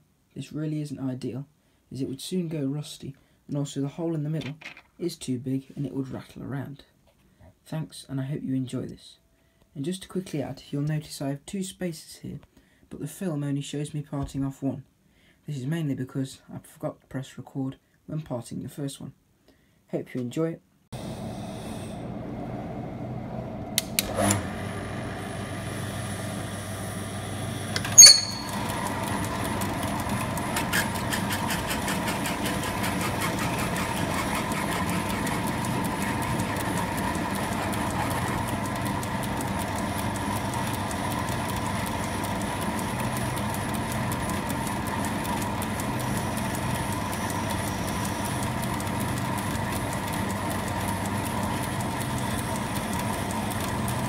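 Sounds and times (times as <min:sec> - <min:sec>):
metal lathe running: 0:27.8 - 0:54.0
fine rapid ticking: 0:30.0 - 0:54.0.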